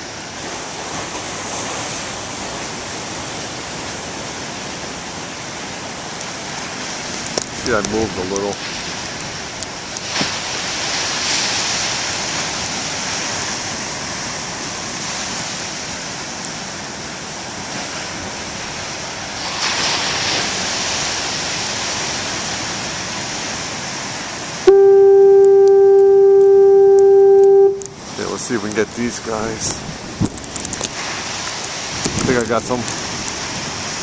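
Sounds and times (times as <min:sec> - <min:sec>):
surf crashing: 0:00.0 - 0:34.0
foghorn low note: 0:24.7 - 0:27.9.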